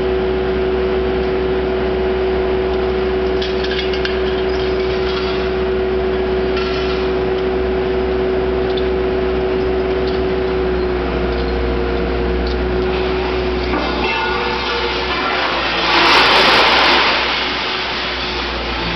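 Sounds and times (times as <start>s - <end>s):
baler hydraulic hum: 3.0s - 18.9s.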